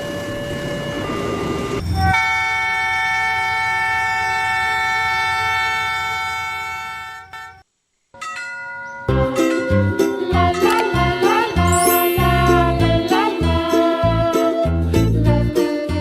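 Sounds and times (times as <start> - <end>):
alternating two-note tone: 10.2 - 13.0.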